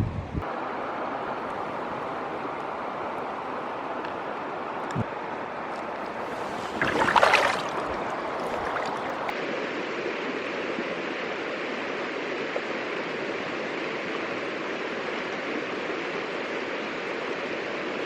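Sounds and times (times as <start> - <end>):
river rushing over rapids: 6.0 - 9.3.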